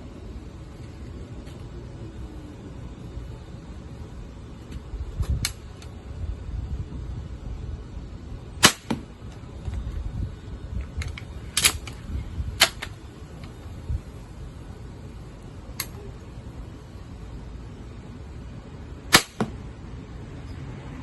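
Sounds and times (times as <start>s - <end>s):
crossbow shooting snap: 8.6s - 9.1s, 19.1s - 19.6s.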